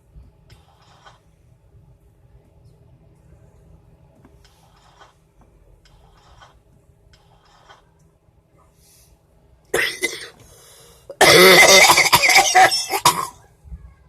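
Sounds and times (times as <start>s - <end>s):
woman coughing: 9.8s - 10.3s, 11.1s - 13.4s.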